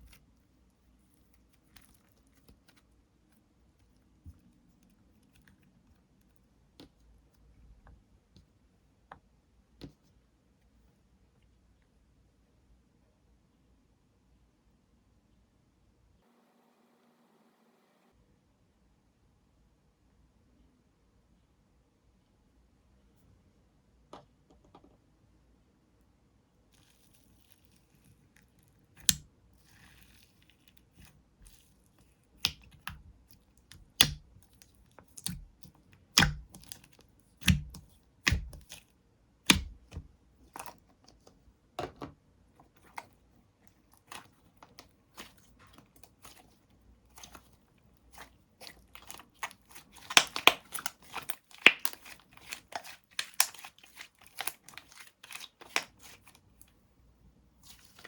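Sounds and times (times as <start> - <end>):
slime popping and crackling: 32.3 - 38.8, 39.5 - 40.8, 43.7 - 56.7, 57.6 - 58.0.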